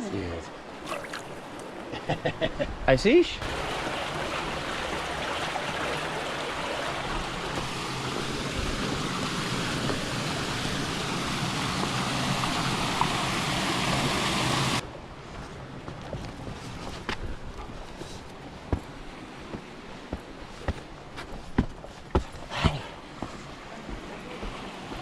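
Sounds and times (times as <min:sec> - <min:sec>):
creek water rushing and splashing: 0:00.5 - 0:02.0, 0:03.4 - 0:14.8, 0:22.0 - 0:25.0.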